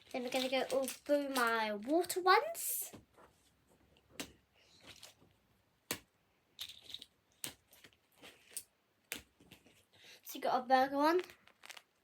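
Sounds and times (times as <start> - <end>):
toys clicking and tapping: 0.0 - 2.3.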